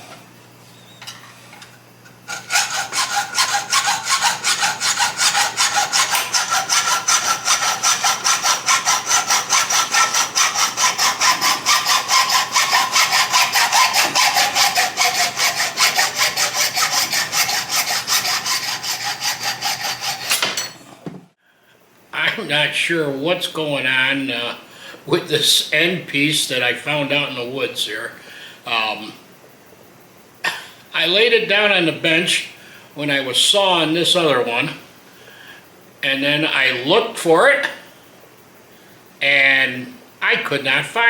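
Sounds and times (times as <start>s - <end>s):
saw cutting through bone: 2.3s - 20.4s.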